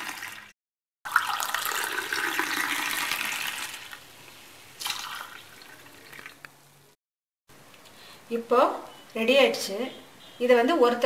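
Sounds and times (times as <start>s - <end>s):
liquid pouring between vessels: 1.1s - 4.1s, 4.8s - 6.6s.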